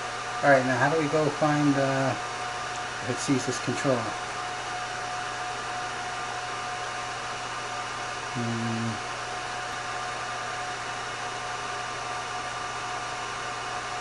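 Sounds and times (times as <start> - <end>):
high whine: 0.0 - 7.1, 7.7 - 12.3
cooling fans whooshing: 0.0 - 14.0
low hum-like tone: 8.3 - 11.5.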